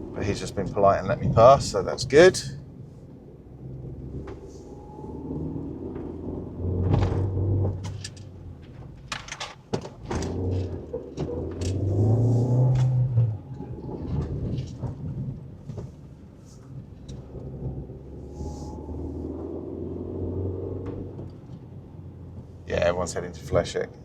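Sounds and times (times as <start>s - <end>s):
car engine drone: 0.0s - 24.0s
road rumble: 0.0s - 24.0s
knocks and rattles: 5.9s - 16.1s.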